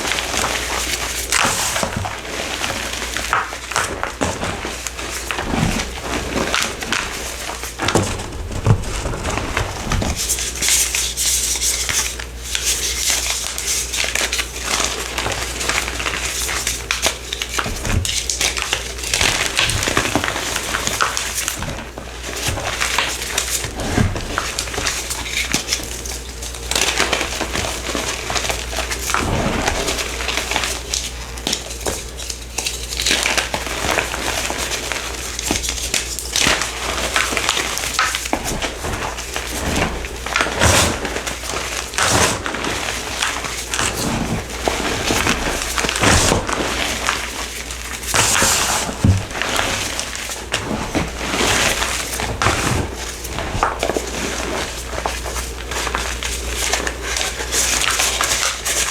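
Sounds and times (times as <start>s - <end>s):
powdery block crumbling and crunching: 0.0s - 58.9s.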